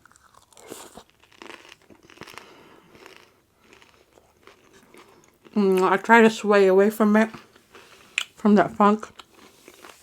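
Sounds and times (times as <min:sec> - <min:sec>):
crunchy chewing: 0:00.0 - 0:05.6.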